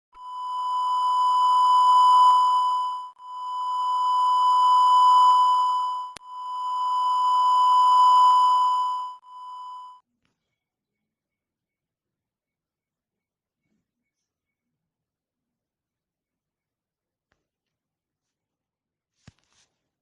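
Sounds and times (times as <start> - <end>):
buzzy electronic ringtone beeps: 0.2 - 10.0.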